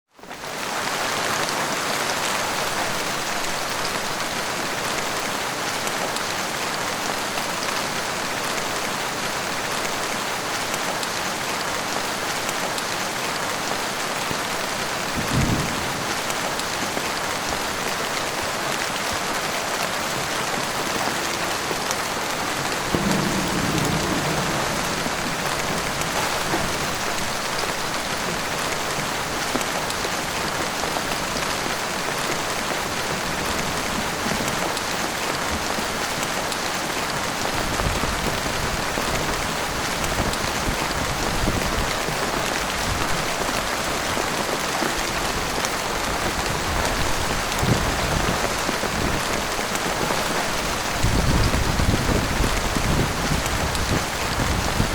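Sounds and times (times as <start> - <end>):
heavy rain falling: 0.1 - 54.9
low rumble: 22.9 - 27.4.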